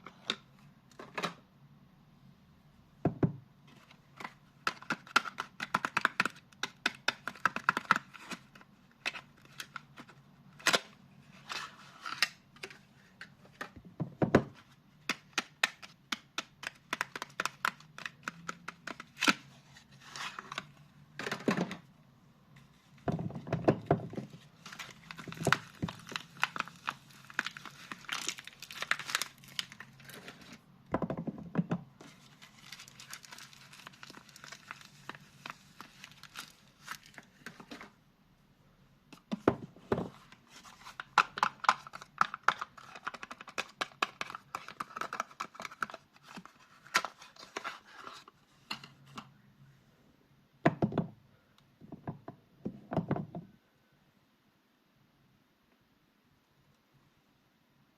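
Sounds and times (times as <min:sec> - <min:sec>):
wrappers crinkling and tearing: 0:24.6 - 0:30.6, 0:32.1 - 0:37.7.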